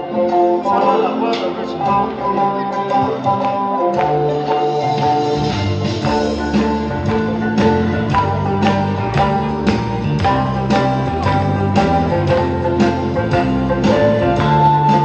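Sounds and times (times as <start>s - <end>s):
instrumental music with steady beat: 0.0s - 15.0s.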